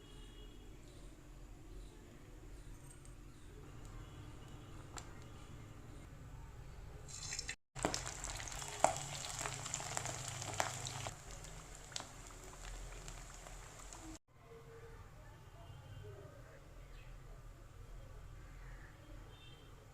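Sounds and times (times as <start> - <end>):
food deep-frying in hot oil: 7.1 - 14.2.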